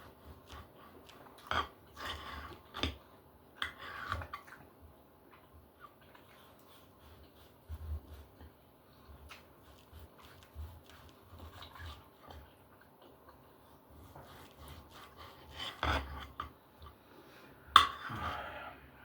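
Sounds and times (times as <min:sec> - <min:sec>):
cutlery scraping on a plate: 0:14.0 - 0:16.5.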